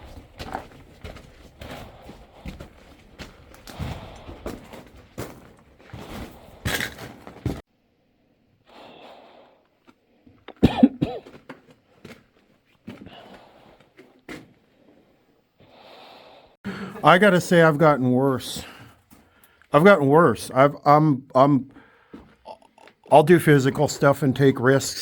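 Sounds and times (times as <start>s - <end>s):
scuffing and knocks of climbing: 0.0s - 7.6s
person breathing hard: 1.6s - 5.0s, 15.6s - 17.0s, 21.7s - 22.4s
person coughing: 10.5s - 11.4s.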